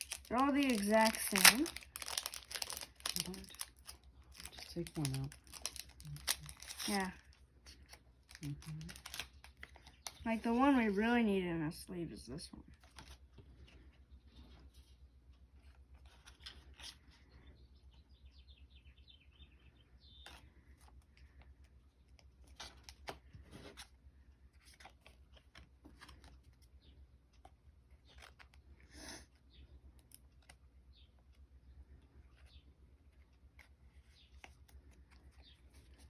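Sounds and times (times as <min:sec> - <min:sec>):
plastic card sleeves rustling: 0:00.0 - 0:11.0.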